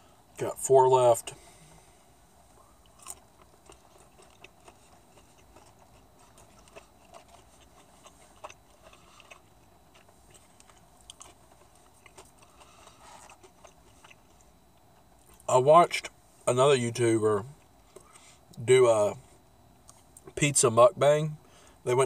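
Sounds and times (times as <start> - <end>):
chewing food: 2.5 - 15.5.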